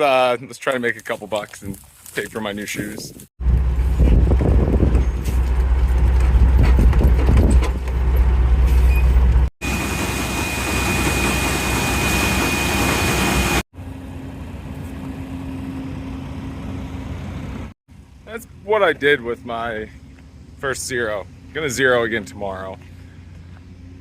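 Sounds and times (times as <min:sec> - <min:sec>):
low engine rumble: 0:03.4 - 0:11.9, 0:13.1 - 0:24.0
engine humming: 0:03.4 - 0:24.0
machine noise with high whine: 0:08.9 - 0:17.7.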